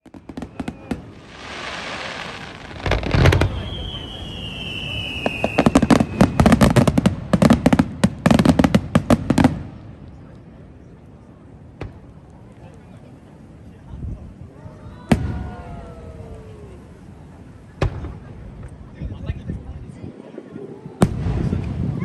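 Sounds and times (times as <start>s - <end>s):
rapid firework bangs: 0.0s - 9.7s
firework booms: 0.0s - 10.0s, 11.7s - 12.2s, 15.0s - 16.2s, 17.1s - 19.3s, 20.9s - 22.0s
fireworks crackling and hissing: 0.0s - 22.0s
whistling firework shell: 2.8s - 6.9s.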